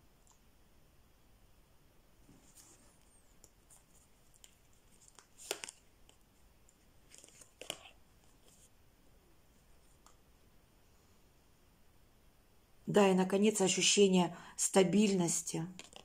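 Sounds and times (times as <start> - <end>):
cards rustling: 2.3 - 8.7, 15.8 - 16.0.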